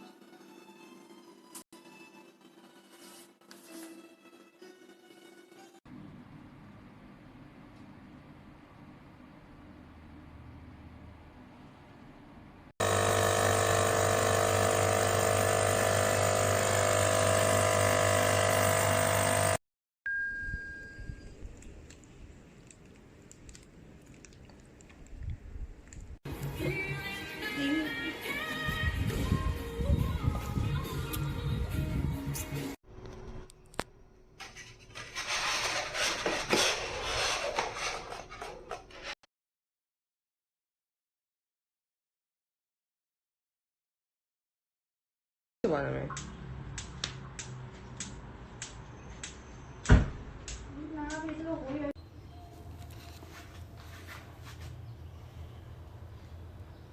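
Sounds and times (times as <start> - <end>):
coffee machine pump buzzing: 12.8 - 19.6.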